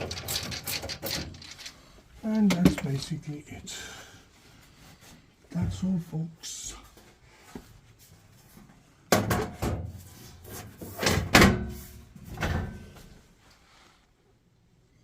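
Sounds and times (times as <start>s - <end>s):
knocks and clatters of hard objects: 0.0s - 1.8s, 2.4s - 3.0s, 9.1s - 10.0s.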